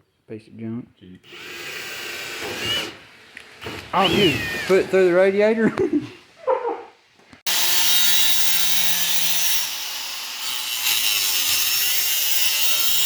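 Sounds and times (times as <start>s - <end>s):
cutoff wheel grinding metal: 7.5s - 13.0s.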